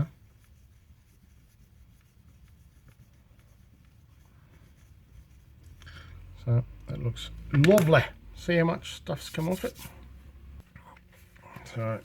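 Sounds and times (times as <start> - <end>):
light scratching and rubbing: 0.0 - 5.9, 8.9 - 12.0.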